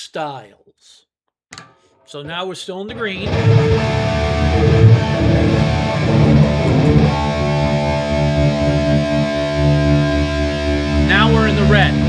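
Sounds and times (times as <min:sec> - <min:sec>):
electric guitar chords strummed: 0:02.9 - 0:12.0.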